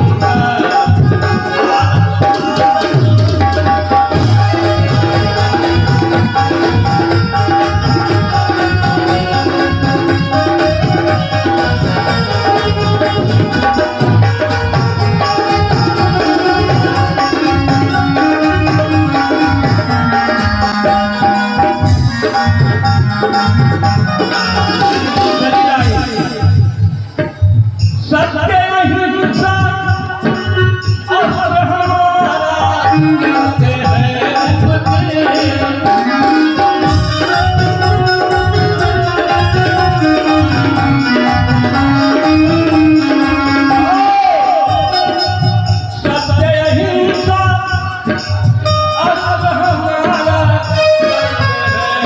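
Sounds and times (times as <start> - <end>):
hand drums rhythm: 0.0 - 52.0
jingling percussion: 0.0 - 52.0
held melodic notes: 32.6 - 46.4.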